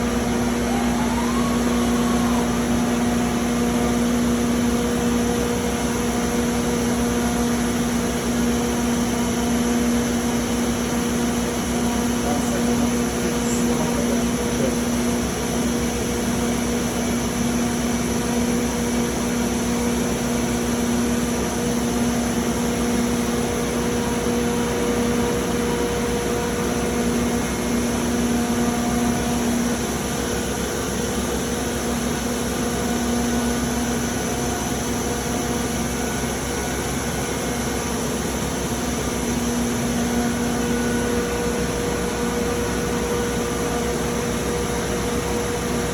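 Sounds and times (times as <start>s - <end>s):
low drone: 0.0s - 4.6s
machine mechanical hum: 0.0s - 45.9s.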